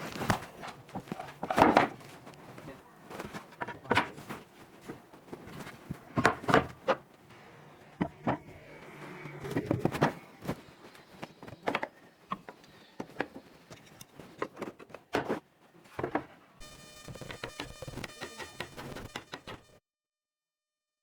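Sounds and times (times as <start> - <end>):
wooden pieces knocking: 0.3 - 2.4, 3.2 - 7.2.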